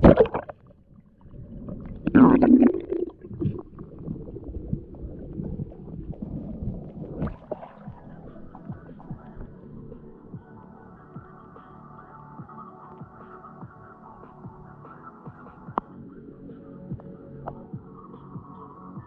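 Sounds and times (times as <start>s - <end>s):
water gurgling burst: 0.0s - 8.6s
underwater river current rumbling: 0.0s - 11.5s
small underwater clicks: 17.0s - 17.6s.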